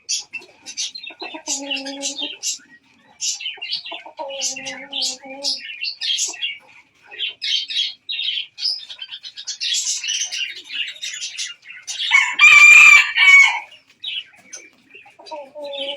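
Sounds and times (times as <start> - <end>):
small birds chirping: 0.0 - 15.9
rooster crowing: 12.1 - 13.7.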